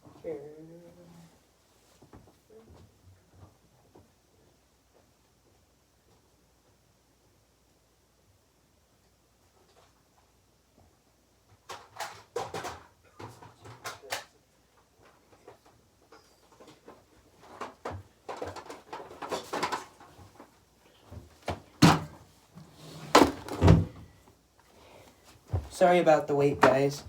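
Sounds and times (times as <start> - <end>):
objects being moved and handled: 11.4 - 27.0.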